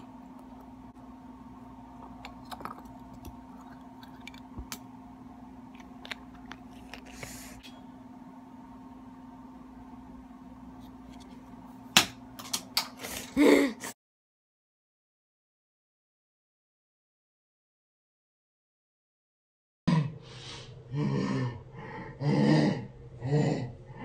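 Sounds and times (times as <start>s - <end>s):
steady electrical hum: 0.0s - 14.0s.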